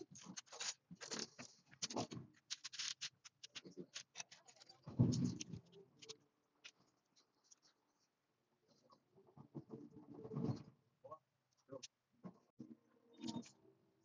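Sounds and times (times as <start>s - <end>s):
plastic pieces clicking: 0.1s - 5.5s.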